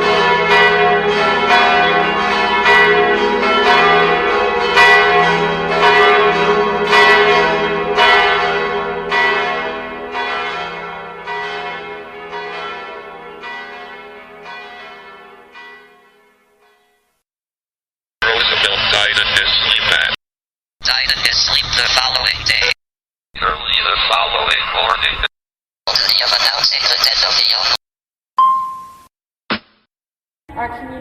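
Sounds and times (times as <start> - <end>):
bells ringing: 0.0 - 17.0, 28.4 - 29.1.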